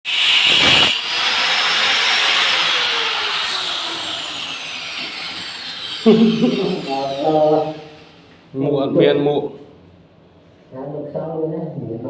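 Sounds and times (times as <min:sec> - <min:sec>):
power tool motor winding down: 0:00.1 - 0:08.5.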